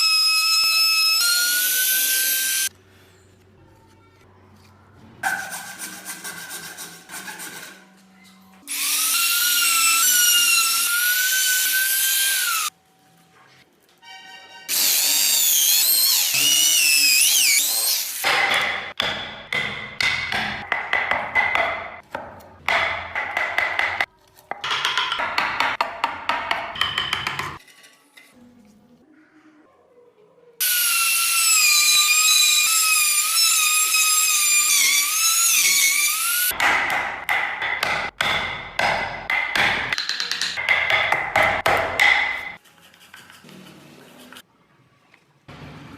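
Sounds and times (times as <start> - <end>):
rotary carving tool whine: 0.0 - 2.7, 14.7 - 18.2, 30.6 - 36.5.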